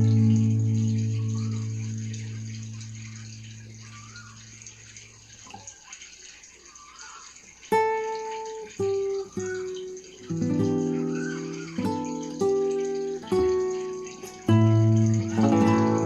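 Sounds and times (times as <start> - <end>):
acoustic guitar playing: 0.0 - 3.8, 7.7 - 16.0
bird chirps: 0.0 - 5.0, 8.8 - 14.5
flowing water hiss: 0.0 - 16.0.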